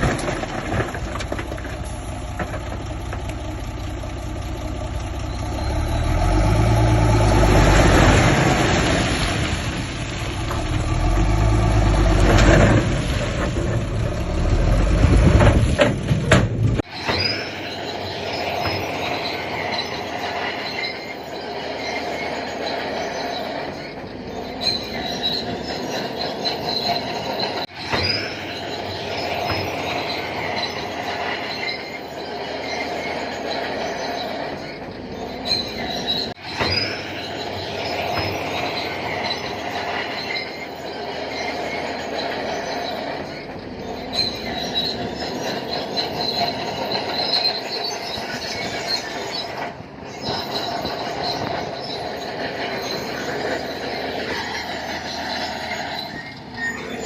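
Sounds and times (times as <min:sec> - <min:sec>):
heavy diesel engine running: 0:00.0 - 0:16.9
steel tracks squealing and clattering: 0:00.0 - 0:57.0.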